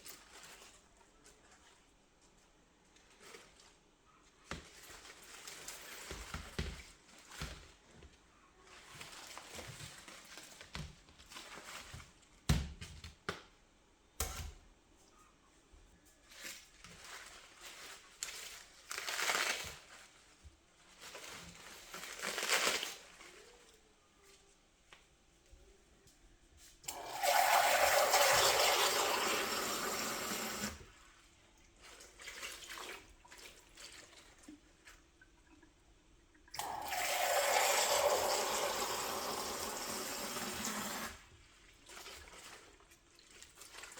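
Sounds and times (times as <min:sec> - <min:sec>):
water running from a tap: 0:26.9 - 0:30.9, 0:36.5 - 0:43.9.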